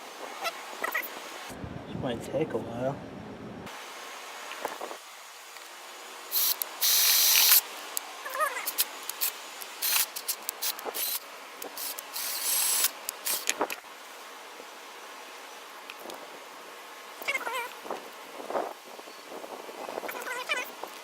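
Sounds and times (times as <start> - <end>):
electric drill cutting metal: 6.4 - 7.6, 8.6 - 11.2, 11.8 - 13.5.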